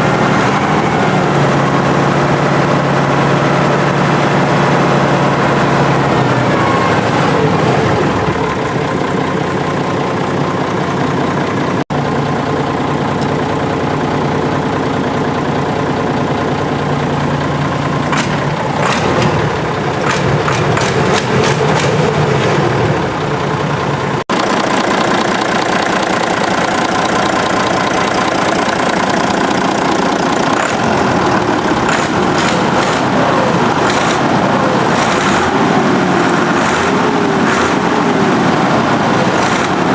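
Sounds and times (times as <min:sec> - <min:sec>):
tractor diesel engine running: 0:00.0 - 0:39.9
sharp clicking rattles: 0:08.3 - 0:22.6, 0:23.2 - 0:35.6.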